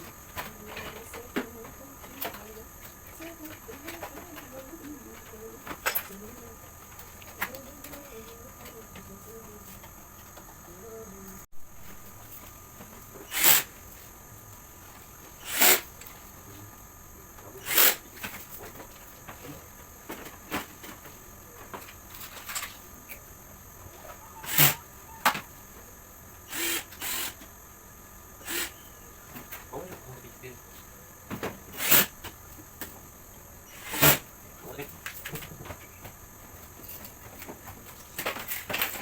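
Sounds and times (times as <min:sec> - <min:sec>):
power drill-driver bursts: 0:13.3 - 0:13.7, 0:15.4 - 0:15.9, 0:17.6 - 0:18.0, 0:24.4 - 0:24.8, 0:26.5 - 0:27.4, 0:28.4 - 0:28.8, 0:31.7 - 0:32.1, 0:33.7 - 0:34.2.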